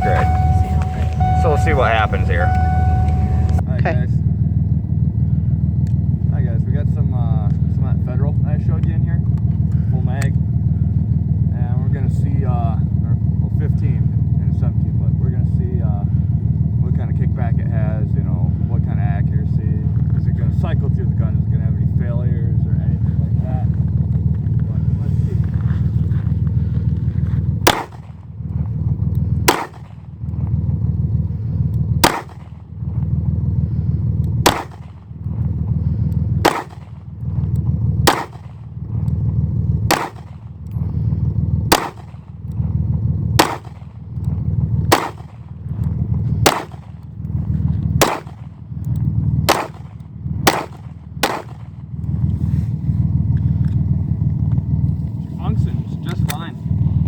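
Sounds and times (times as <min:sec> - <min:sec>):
low rumble: 0:00.0 - 0:57.0
pistol shots: 0:27.6 - 0:28.5, 0:29.4 - 0:30.4, 0:32.0 - 0:32.8, 0:34.4 - 0:35.4, 0:36.1 - 0:39.2, 0:39.8 - 0:40.8, 0:41.7 - 0:42.6, 0:43.4 - 0:44.1, 0:44.8 - 0:45.8, 0:46.4 - 0:47.2, 0:48.0 - 0:48.8, 0:49.4 - 0:52.0.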